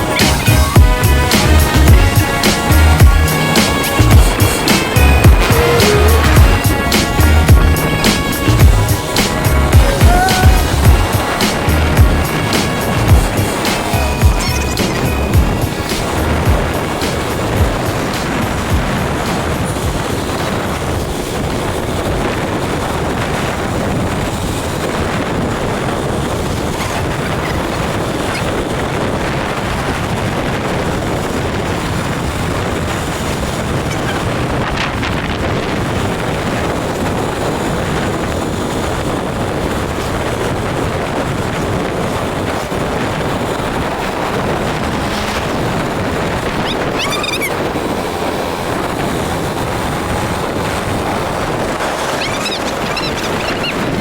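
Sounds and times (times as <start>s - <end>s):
moving vehicle rushing noise: 0.0s - 54.0s
wind buffeting microphone: 0.0s - 54.0s
brief high squeak: 14.4s - 15.0s, 46.6s - 47.7s, 52.0s - 53.8s.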